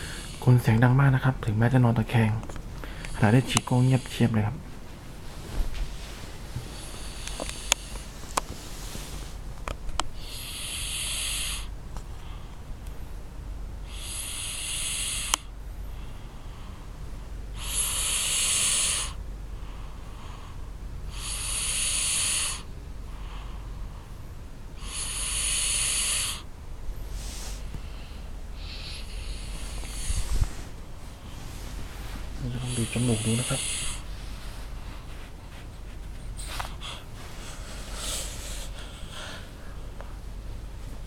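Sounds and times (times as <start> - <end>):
loud hissing snores: 0.0 - 1.4, 2.9 - 4.5, 6.6 - 8.1, 10.2 - 11.7, 13.8 - 16.8, 17.5 - 19.2, 20.1 - 23.3, 24.7 - 31.4, 32.4 - 34.2, 36.7 - 39.6.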